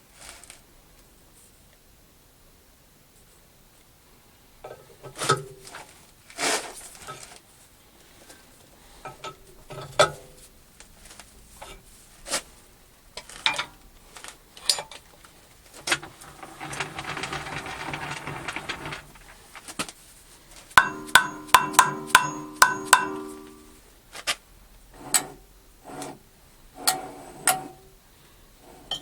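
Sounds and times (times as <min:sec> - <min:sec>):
rattling scrape: 0:15.6 - 0:20.0, 0:20.8 - 0:23.8
hammer tapping metal workpiece: 0:20.8 - 0:23.8.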